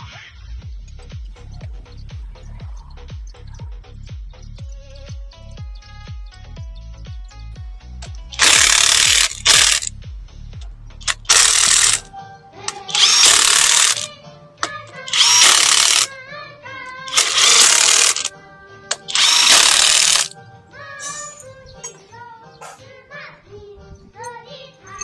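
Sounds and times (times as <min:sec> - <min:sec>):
background music: 0:00.0 - 0:25.0
power tool running in bursts: 0:08.4 - 0:09.9, 0:11.0 - 0:12.0, 0:12.9 - 0:14.1, 0:15.1 - 0:16.1, 0:17.1 - 0:18.3, 0:18.9 - 0:20.3.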